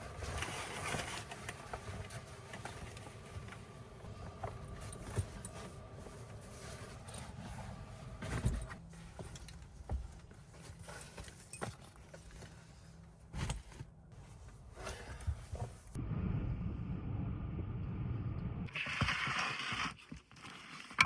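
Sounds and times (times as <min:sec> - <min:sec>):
knocks and rattles of handling: 0:00.0 - 0:12.7
gusty wind against a van: 0:15.3 - 0:18.7.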